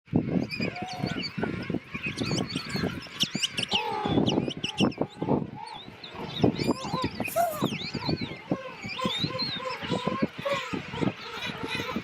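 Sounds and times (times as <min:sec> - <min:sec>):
penguin colony calls: 0:00.2 - 0:12.0.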